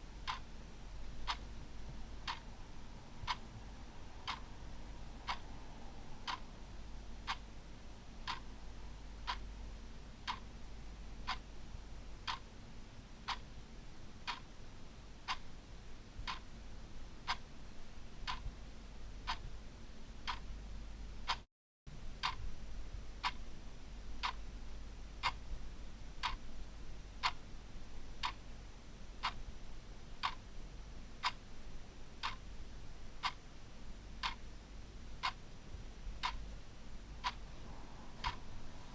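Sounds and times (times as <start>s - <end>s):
clock ticking: 0.3s - 0.5s, 1.2s - 1.5s, 2.2s - 2.5s, 3.2s - 3.5s, 4.2s - 4.5s, 5.2s - 5.4s, 6.2s - 6.5s, 8.2s - 8.5s, 10.2s - 10.4s, 11.3s - 11.5s, 12.2s - 12.4s, 16.2s - 16.4s, 18.2s - 18.5s, 19.3s - 19.5s, 22.2s - 22.5s, 24.2s - 24.4s, 25.2s - 25.4s, 26.2s - 26.4s, 28.2s - 28.4s, 29.2s - 29.4s, 30.2s - 30.4s, 32.2s - 32.4s, 34.2s - 34.4s, 35.2s - 35.4s, 36.2s - 36.4s, 37.2s - 37.6s, 38.2s - 38.9s.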